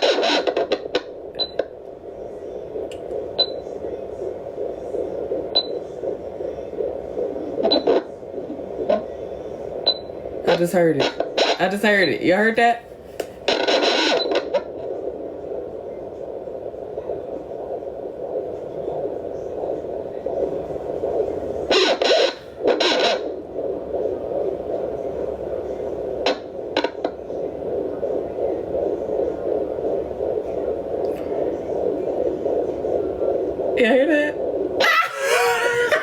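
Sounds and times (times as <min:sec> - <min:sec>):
fetal doppler static hiss: 0:00.0 - 0:36.0.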